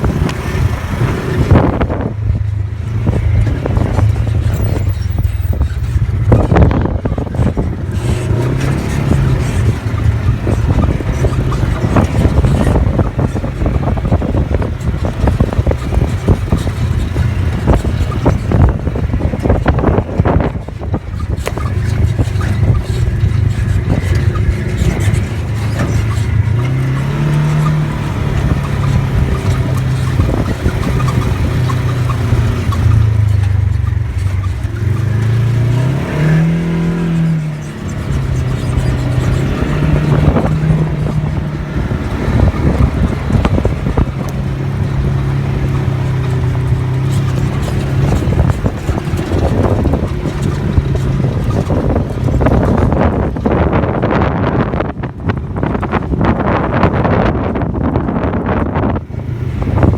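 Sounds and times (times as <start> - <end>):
road noise: 0.0 - 59.9
vehicle engine running: 0.0 - 59.9
wind noise: 0.0 - 59.9.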